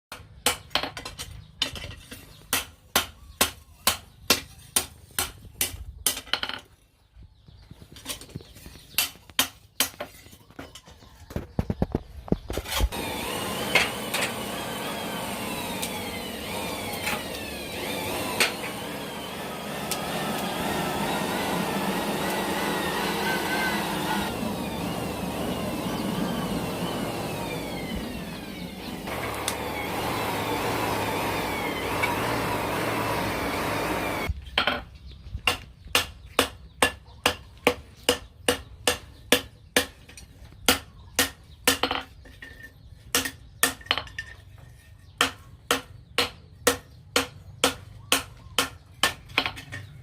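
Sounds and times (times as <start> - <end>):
power tool whining: 12.6 - 34.3.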